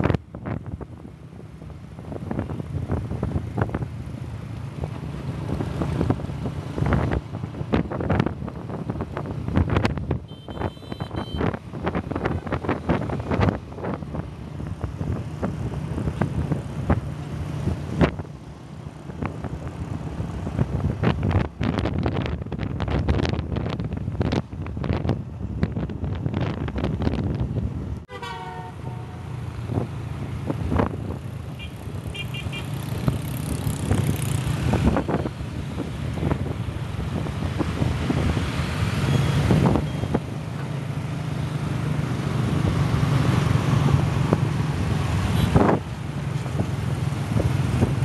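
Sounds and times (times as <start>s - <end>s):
wind buffeting microphone: 11.4s - 28.0s, 32.9s - 40.3s
short horn toots: 28.1s - 29.2s.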